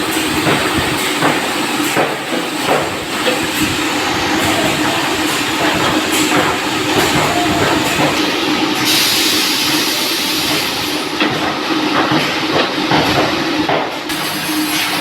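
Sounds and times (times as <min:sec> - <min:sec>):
sawmill machinery hum and hiss: 0:00.0 - 0:15.0
knocks and clatter: 0:00.1 - 0:03.8, 0:10.5 - 0:14.0.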